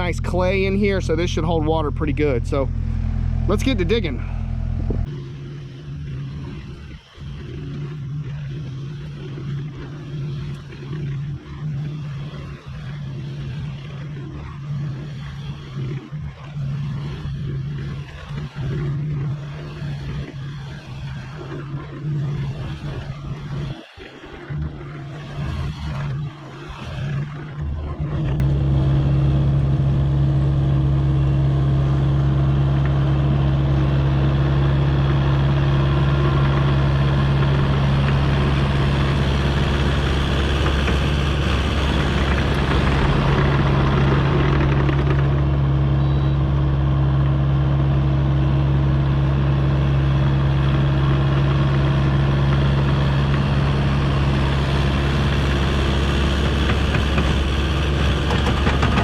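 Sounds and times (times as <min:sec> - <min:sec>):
excavator diesel engine running: 0:00.0 - 0:14.6, 0:27.6 - 0:59.0.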